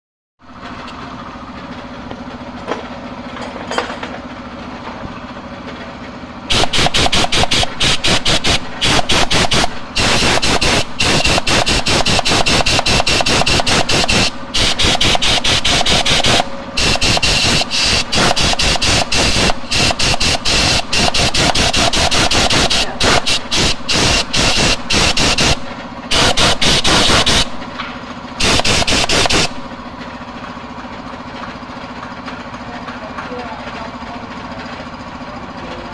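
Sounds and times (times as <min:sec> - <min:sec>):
workshop hum: 0:00.4 - 0:35.9
compressed-air tool hissing: 0:06.5 - 0:27.6, 0:28.4 - 0:29.6.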